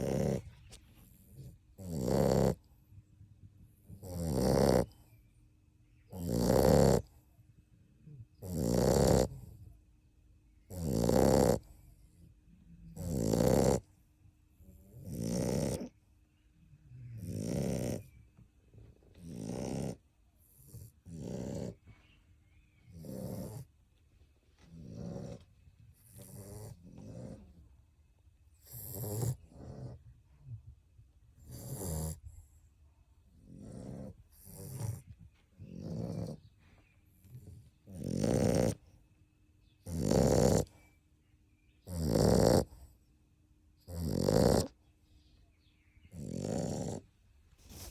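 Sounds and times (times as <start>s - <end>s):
puppy snoring: 0.0s - 2.8s, 3.7s - 5.0s, 6.1s - 7.2s, 8.0s - 9.7s, 10.6s - 12.2s, 12.8s - 14.0s, 14.6s - 16.0s, 17.0s - 18.2s, 19.1s - 22.0s, 22.8s - 23.7s, 24.6s - 27.7s, 28.6s - 30.7s, 31.3s - 32.6s, 33.3s - 36.6s, 37.2s - 38.9s, 39.8s - 40.9s, 41.8s - 43.0s, 43.8s - 44.8s, 46.0s - 47.9s.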